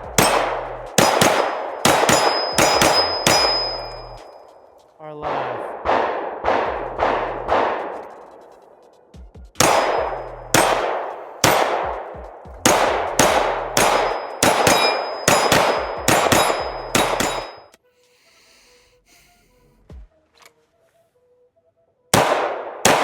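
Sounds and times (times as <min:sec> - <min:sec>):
pistol shots with ringing tail: 0:00.0 - 0:04.5, 0:05.2 - 0:08.3, 0:09.6 - 0:17.7, 0:22.1 - 0:23.0.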